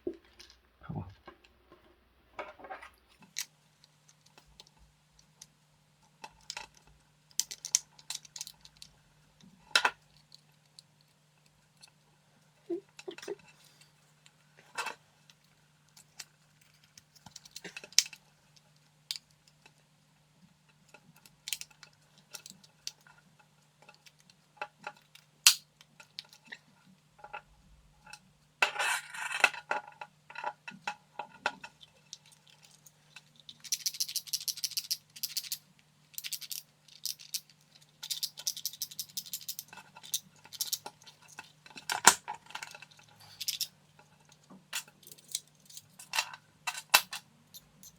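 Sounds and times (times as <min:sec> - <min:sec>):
plastic and metal parts clicking: 0:36.2 - 0:43.7.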